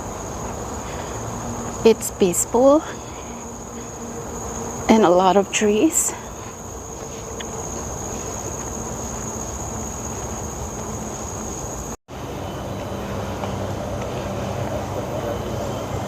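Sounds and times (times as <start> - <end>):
high-pitched insect drone: 0.0 - 16.0
outdoor background noise: 0.0 - 16.0.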